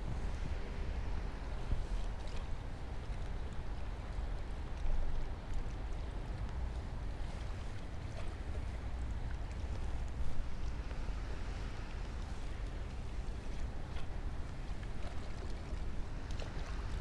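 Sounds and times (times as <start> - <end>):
wind buffeting microphone: 0.0 - 4.7.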